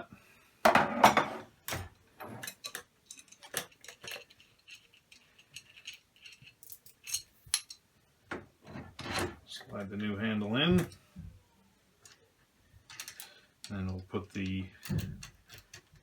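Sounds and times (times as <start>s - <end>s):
metal parts knocking and clinking: 0.7s - 7.8s, 12.8s - 16.0s.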